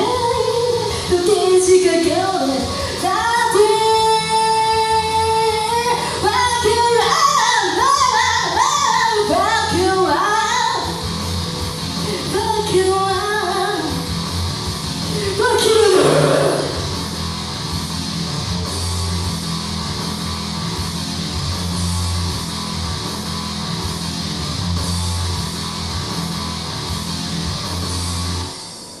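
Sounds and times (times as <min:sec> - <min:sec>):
bass: 0:00.0 - 0:29.0
drums: 0:00.0 - 0:29.0
distorted electric guitar riffing: 0:14.8 - 0:18.3.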